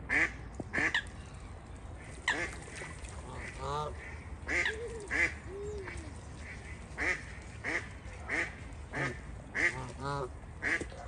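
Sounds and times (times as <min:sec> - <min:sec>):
ducks quacking: 0:06.4 - 0:10.9.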